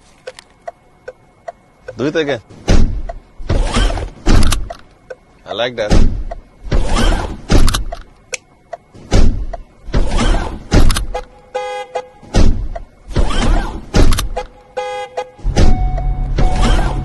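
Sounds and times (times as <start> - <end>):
car horn honk: 11.1 - 12.3, 14.5 - 17.0.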